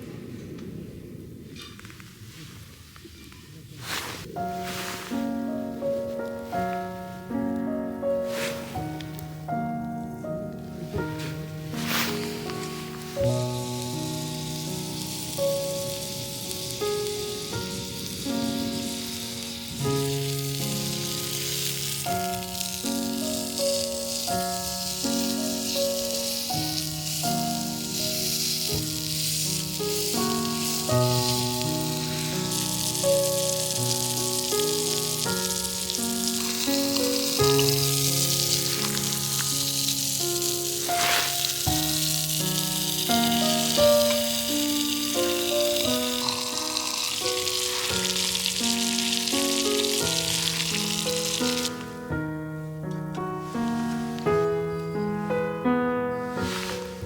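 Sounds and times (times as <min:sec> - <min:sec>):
food sizzling over a fire: 0:00.0 - 0:55.4, 0:56.3 - 0:57.0
background music of held chords: 0:04.4 - 0:57.0.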